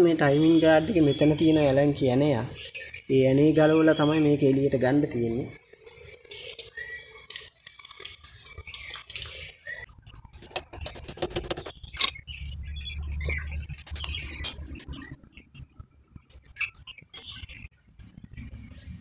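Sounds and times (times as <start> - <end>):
metal tools and parts clinking: 10.4 - 12.2.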